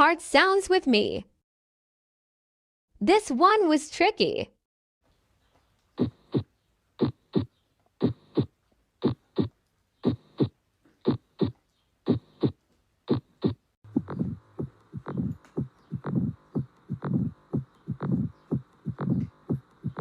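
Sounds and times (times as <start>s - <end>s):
heartbeat thumps: 6.0s - 20.0s.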